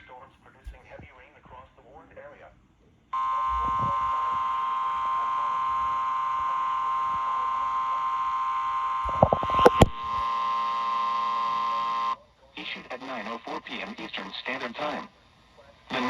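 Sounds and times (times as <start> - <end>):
steady electronic alarm tone: 3.2 - 12.2.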